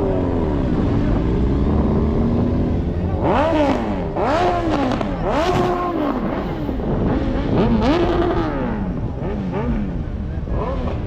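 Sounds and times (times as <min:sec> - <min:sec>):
car engine revving: 0:00.0 - 0:11.0.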